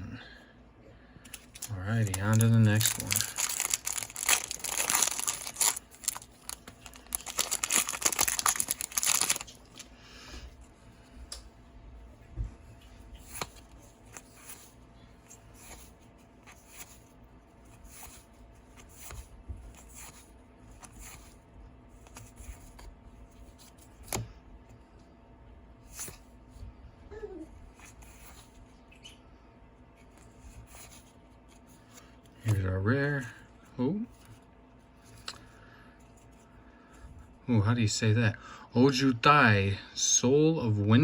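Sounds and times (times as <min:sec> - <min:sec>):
wrapper crinkling and tearing: 0:01.3 - 0:09.9.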